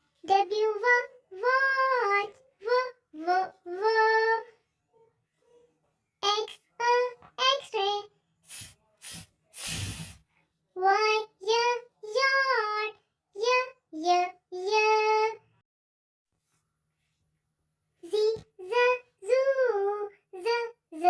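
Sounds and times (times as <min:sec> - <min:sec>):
child chanting phonics sounds: 0:06.2 - 0:10.2, 0:18.0 - 0:21.0.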